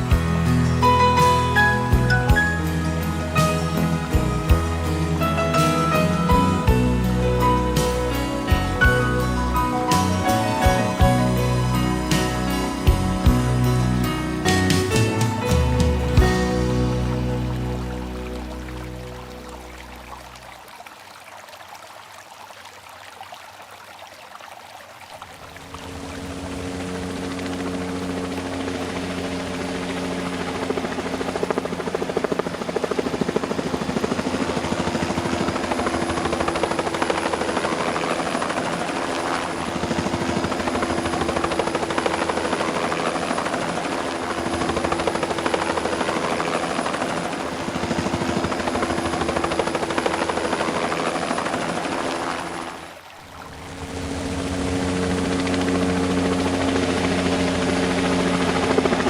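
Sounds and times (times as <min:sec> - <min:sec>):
helicopter engine hum: 0:00.0 - 0:20.8, 0:25.2 - 0:59.0.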